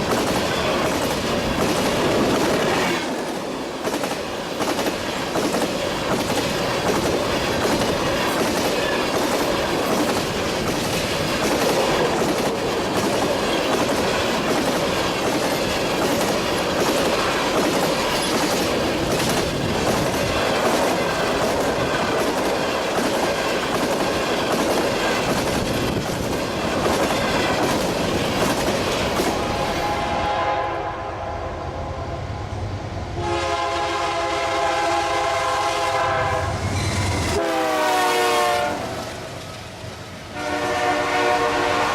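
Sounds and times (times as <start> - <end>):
train wheels clicking over rail joints: 0.0 - 29.6
locomotive horn chord: 29.8 - 32.2, 33.2 - 36.6, 37.4 - 38.9, 40.3 - 41.9.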